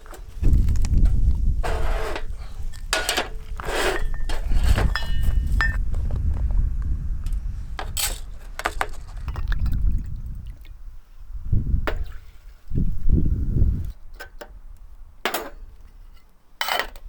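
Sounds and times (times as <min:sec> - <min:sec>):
metal cookware clinking: 0:02.9 - 0:05.8.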